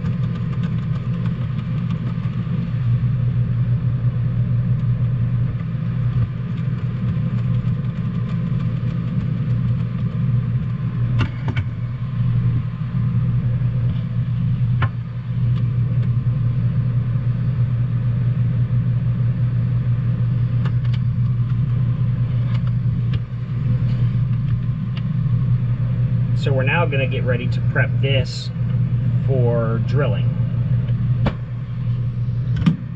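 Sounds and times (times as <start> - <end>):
low machine hum: 0.0 - 32.9.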